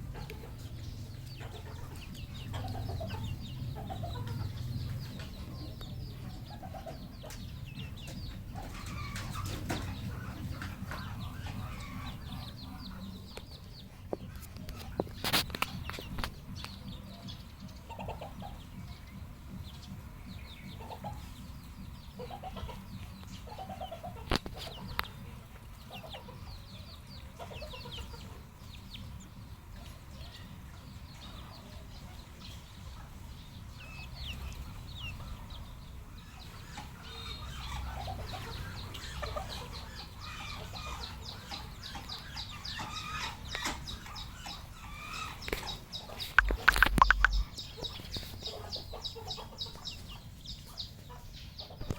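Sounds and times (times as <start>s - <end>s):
junglefowl clucking: 0.0s - 13.5s, 14.2s - 19.0s, 20.4s - 28.6s, 33.8s - 51.9s
high chirps: 45.6s - 48.0s
sharp click: 46.4s - 47.5s.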